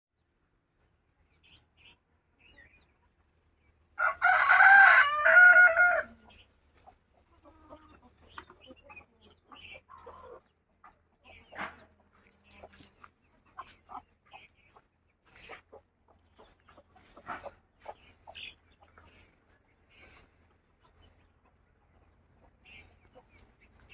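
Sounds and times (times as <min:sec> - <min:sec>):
chickens clucking: 0:00.4 - 0:23.9
rooster crowing: 0:04.0 - 0:06.2.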